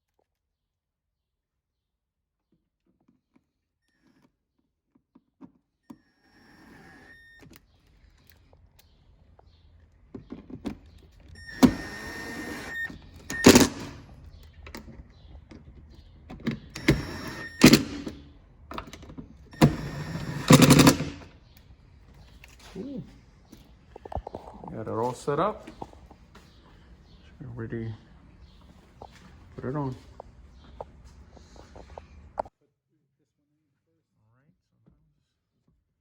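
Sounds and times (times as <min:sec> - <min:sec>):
power driver driving screws: 0:05.9 - 0:07.6, 0:11.4 - 0:14.2, 0:16.4 - 0:21.4
faint handling noises: 0:20.6 - 0:32.5.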